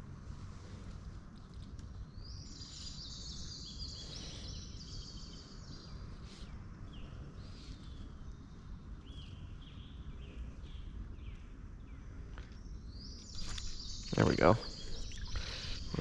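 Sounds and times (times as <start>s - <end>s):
steady low outdoor rush: 0.0s - 16.0s
high bird calls: 13.0s - 16.0s.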